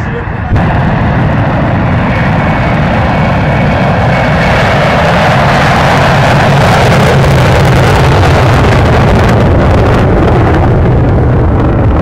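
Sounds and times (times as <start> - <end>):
jet engine roaring: 0.0 - 12.0.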